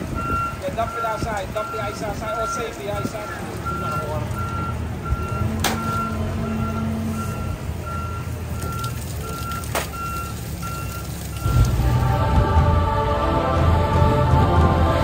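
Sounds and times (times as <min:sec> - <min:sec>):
reversing alarm beeping: 0:00.1 - 0:11.7.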